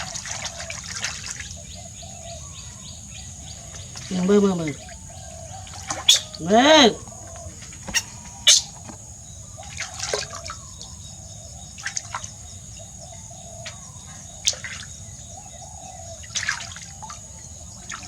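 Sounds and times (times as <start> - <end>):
bath water splashing: 0.0 - 1.6.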